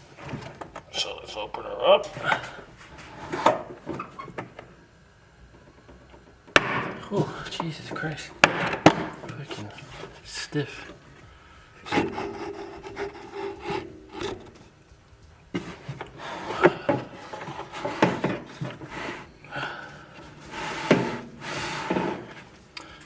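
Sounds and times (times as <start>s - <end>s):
plastic case rubbing and scraping: 2.2s - 4.6s, 5.8s - 22.8s
clicks and knocks: 5.5s - 10.2s.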